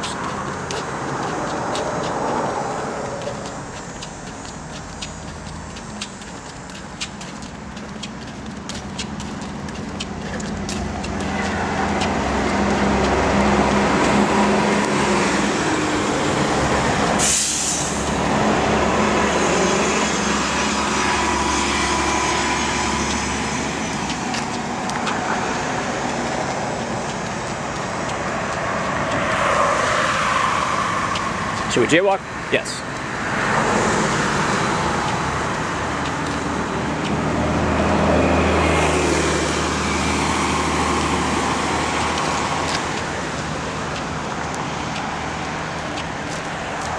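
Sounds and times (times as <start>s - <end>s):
heavy vehicle engine passing: 0.0s - 46.9s
short hiss of air: 17.2s - 18.2s.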